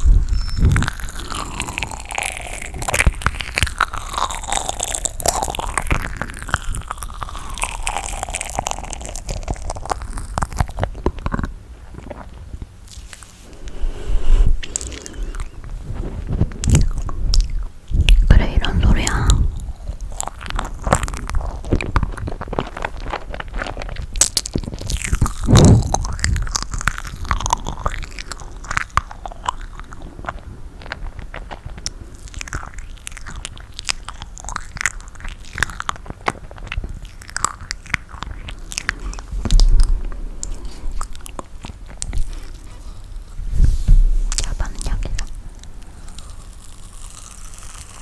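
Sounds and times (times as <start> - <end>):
chewing sticky marshmallow: 0.0 - 43.5, 44.2 - 48.0
low thumps: 13.4 - 17.4, 25.3 - 27.0.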